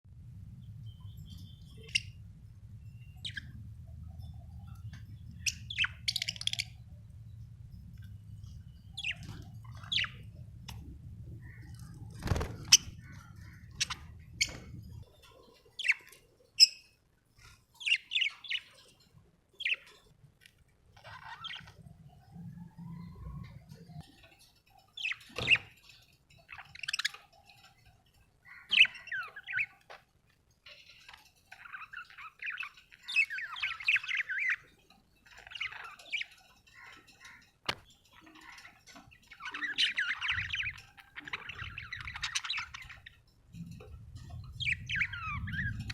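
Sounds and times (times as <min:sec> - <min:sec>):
low steady hum: 0:00.1 - 0:16.0, 0:37.7 - 0:45.9
budgerigars chirping: 0:04.6 - 0:06.8, 0:08.8 - 0:10.4, 0:31.5 - 0:34.7, 0:38.3 - 0:43.3, 0:44.5 - 0:45.9.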